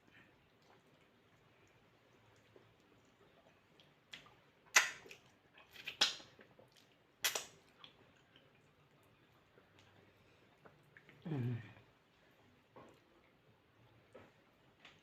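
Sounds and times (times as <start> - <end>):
eating smacks and clicks: 0.4 - 11.2.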